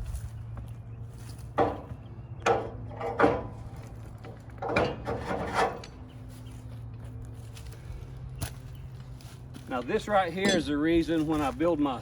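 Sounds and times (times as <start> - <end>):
low engine hum: 0.0 - 12.0
wooden knocks and scraping: 1.4 - 6.1.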